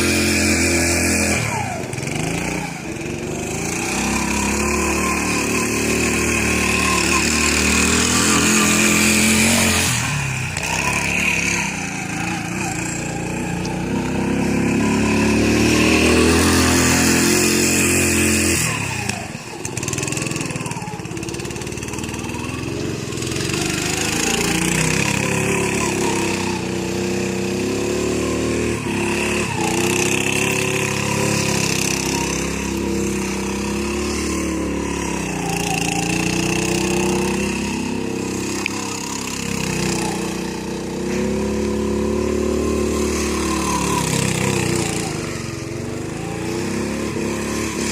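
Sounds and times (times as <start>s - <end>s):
go-kart engine revving: 0.0s - 47.9s.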